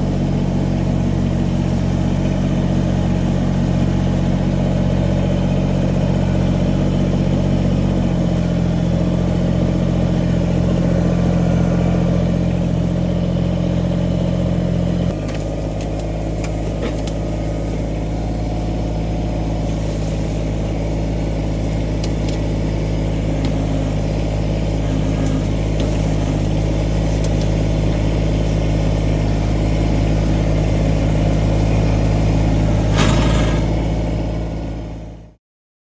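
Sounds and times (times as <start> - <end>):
tractor diesel engine running: 0.0 - 35.4
brief clatter: 32.9 - 33.8.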